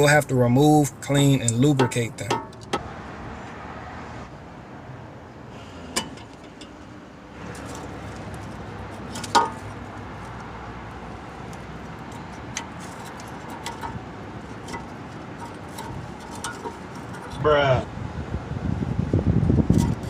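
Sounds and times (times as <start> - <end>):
metal clinks and taps: 1.4 - 2.8, 11.4 - 17.4.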